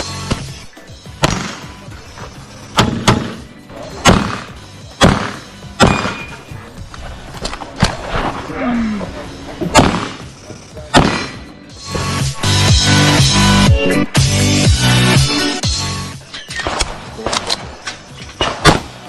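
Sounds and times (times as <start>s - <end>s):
handgun shots echoing: 1.2s - 1.8s, 2.8s - 6.4s, 9.7s - 10.3s, 10.9s - 11.5s.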